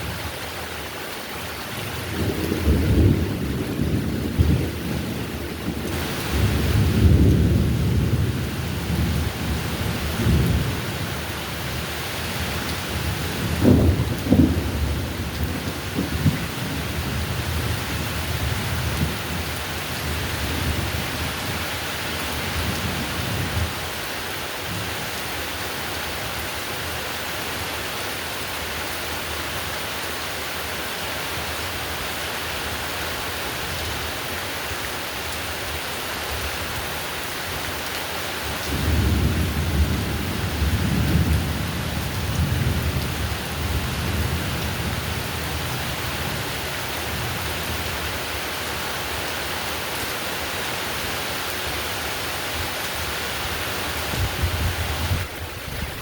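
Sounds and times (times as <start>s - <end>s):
heavy rain: 0.0s - 56.0s
thunder rumbling: 2.1s - 21.6s, 38.7s - 47.8s, 54.0s - 56.0s.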